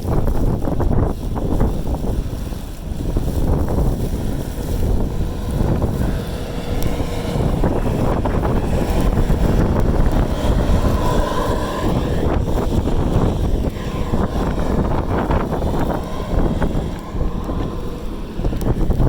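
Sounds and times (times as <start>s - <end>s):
wind buffeting microphone: 0.0s - 19.0s
faint tones: 2.4s - 19.0s.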